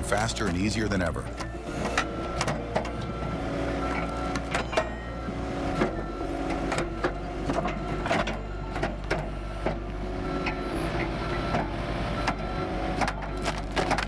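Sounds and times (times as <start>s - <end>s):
engine running steadily: 0.0s - 14.0s
logs cracking being split: 13.0s - 14.0s.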